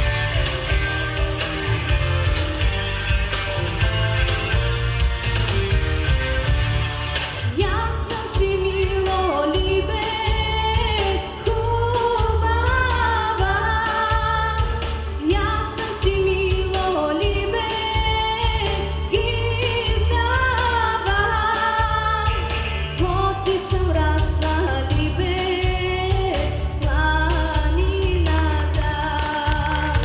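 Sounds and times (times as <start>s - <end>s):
instrumental music with pulsing beat: 0.0s - 30.0s
woman singing folk song: 7.6s - 30.0s.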